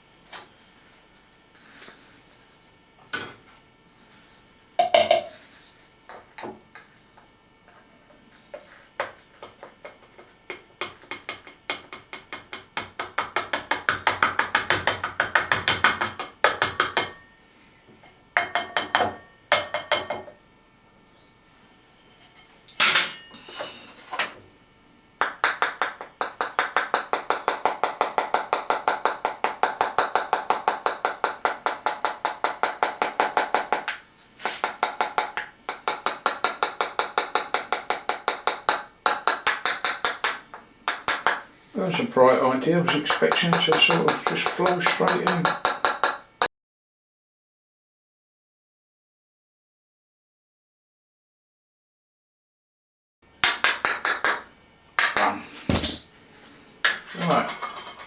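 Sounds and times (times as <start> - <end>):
rapid tapping on small jar: 9.0 - 17.1, 25.2 - 41.5, 42.8 - 46.3.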